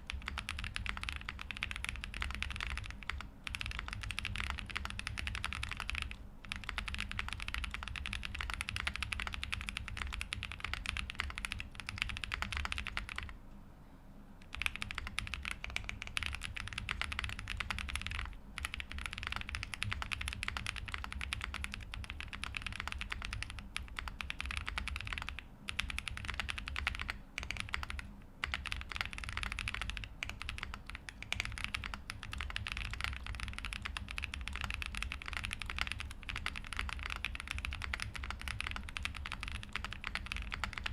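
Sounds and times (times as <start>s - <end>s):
typing on mechanical keyboard: 0.0s - 13.4s, 14.4s - 40.9s.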